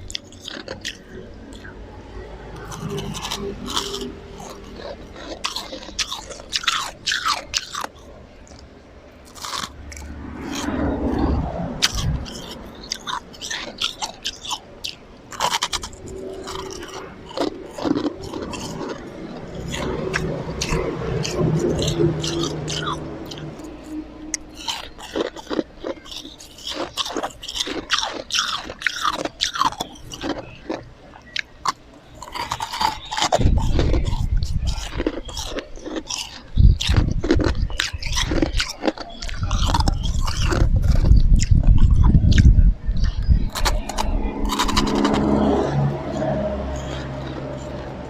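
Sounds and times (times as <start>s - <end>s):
ice chewing and crunching: 0.0s - 1.7s, 2.4s - 48.0s
heavy low rumble: 0.0s - 26.5s, 39.2s - 48.0s.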